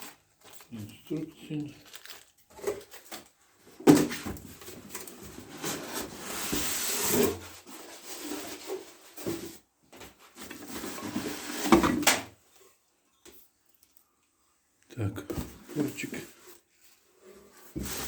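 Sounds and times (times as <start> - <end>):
packaging rustling: 0.0 - 3.4.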